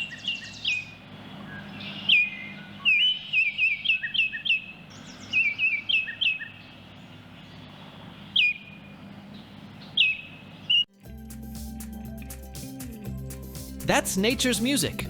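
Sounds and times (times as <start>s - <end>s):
bird whistling song: 0.0s - 6.8s, 8.2s - 8.9s, 9.8s - 10.9s.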